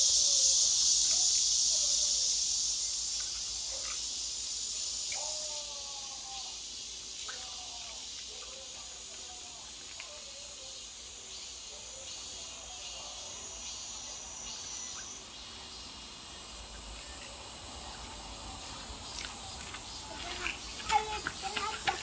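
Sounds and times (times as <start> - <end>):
high-pitched insect drone: 0.0 - 6.7
faint distant calls: 0.0 - 22.0.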